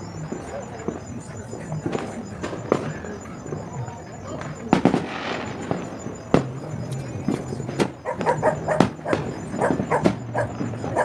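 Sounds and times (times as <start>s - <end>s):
fireworks bangs: 0.0s - 11.0s
dog barking and yipping: 8.0s - 11.0s.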